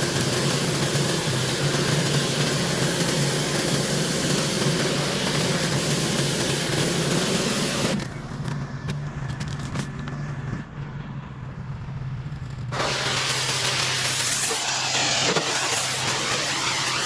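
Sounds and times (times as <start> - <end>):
high-pressure spray hissing: 0.0 - 8.0, 12.7 - 17.0
pressure washer engine humming: 0.0 - 8.6, 12.7 - 17.0.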